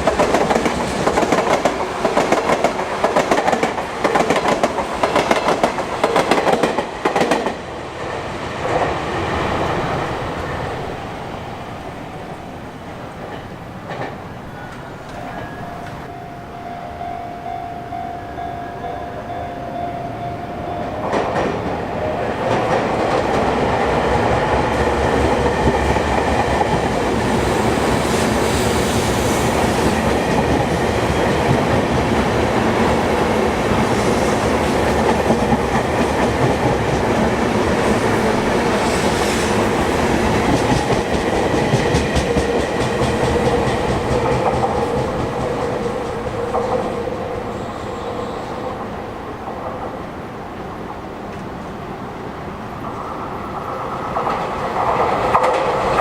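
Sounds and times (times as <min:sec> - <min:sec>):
train wheels clattering on rails: 0:00.0 - 0:09.0, 0:13.0 - 0:16.1, 0:20.7 - 0:50.0, 0:52.8 - 0:56.0
train rumble: 0:00.0 - 0:56.0
steady tone: 0:15.2 - 0:22.6.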